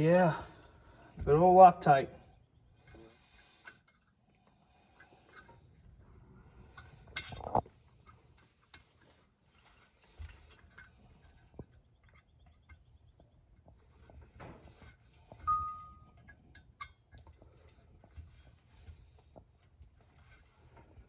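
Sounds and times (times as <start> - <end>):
metal tools clinking: 6.7 - 12.9, 14.0 - 18.2.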